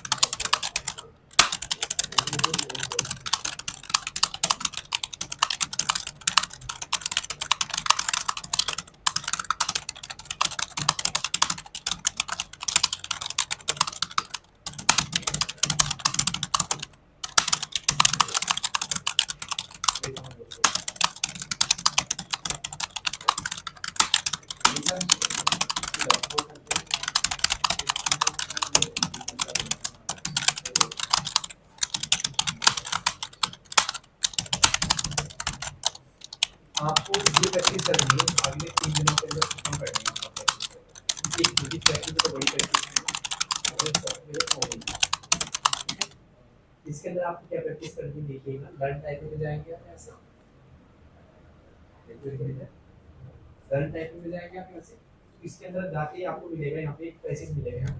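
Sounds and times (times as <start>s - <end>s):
fast typing on keyboard: 0.0s - 46.2s.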